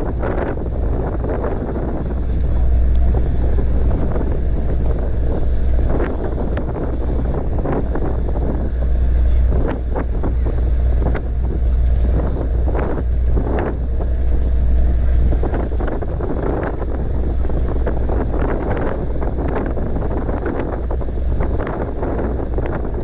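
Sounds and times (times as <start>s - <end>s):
boat engine droning: 0.0s - 23.0s
wind buffeting microphone: 0.0s - 23.0s.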